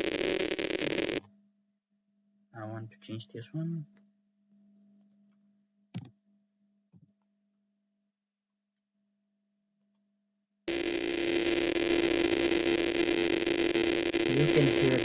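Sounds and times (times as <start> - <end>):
harsh buzz with steady tone: 0.0 - 1.2, 10.7 - 15.0.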